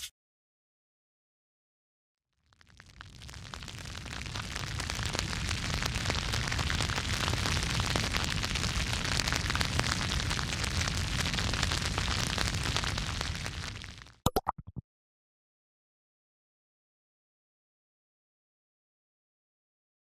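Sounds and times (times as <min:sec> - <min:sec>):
crackling sizzling with pops: 0:02.4 - 0:14.2.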